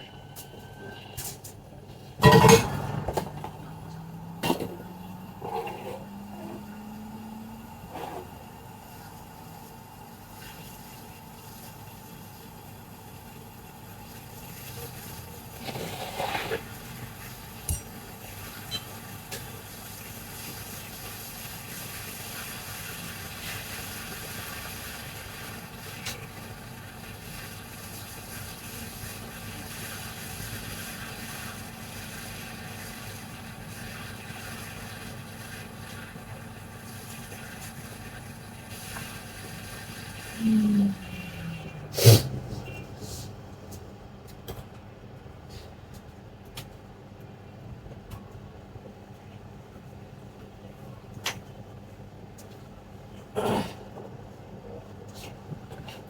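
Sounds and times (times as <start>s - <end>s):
hot-air station blowing hiss: 41.7s - 42.4s.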